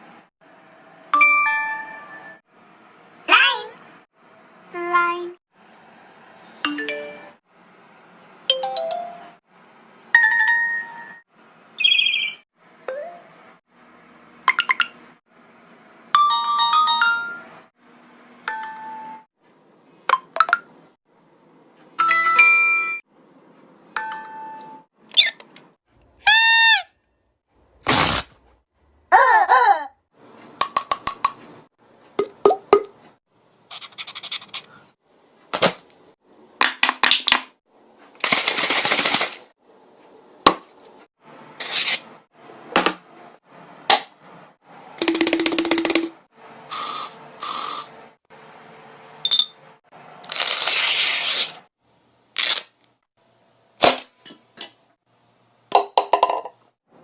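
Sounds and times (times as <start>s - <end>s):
ding and ringtone tones: 6.7s - 7.4s, 16.2s - 17.5s
repeated chirps: 11.8s - 13.1s.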